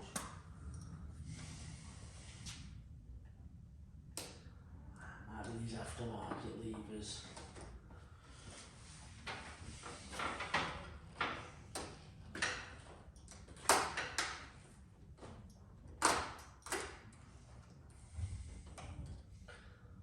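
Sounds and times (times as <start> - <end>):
sharp irregular clicks and knocks: 10.2 - 14.6.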